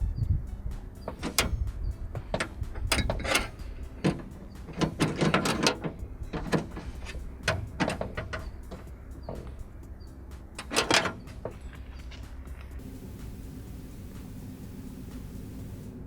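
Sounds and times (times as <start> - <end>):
tools clicking and scraping on car door: 1.1 - 1.6, 2.3 - 9.6, 10.6 - 11.7.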